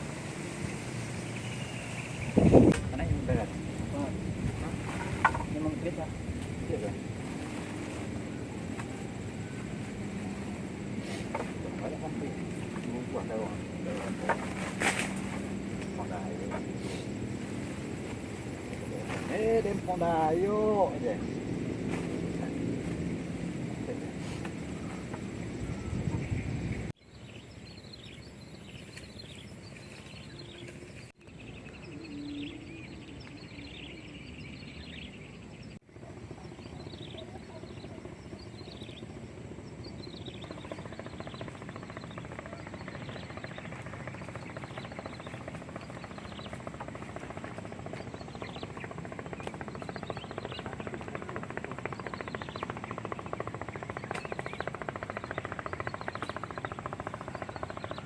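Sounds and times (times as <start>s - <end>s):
small animals chirping: 35.9s - 58.0s.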